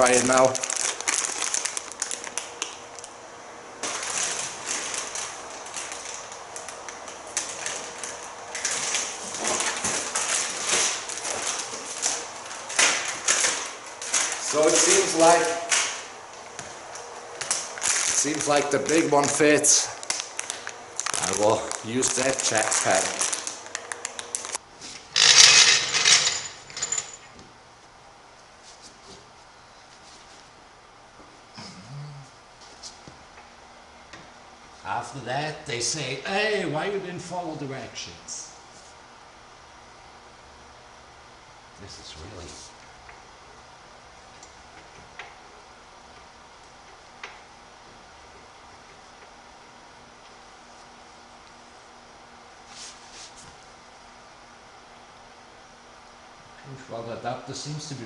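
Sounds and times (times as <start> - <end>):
plastic packaging crinkling: 0.0 - 3.1, 3.8 - 16.0, 17.4 - 24.6.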